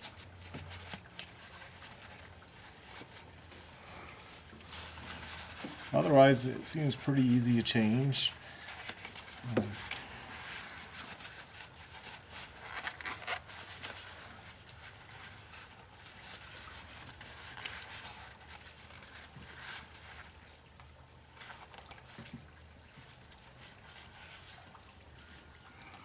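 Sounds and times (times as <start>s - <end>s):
paper towel rustling and rubbing: 0.0s - 20.4s.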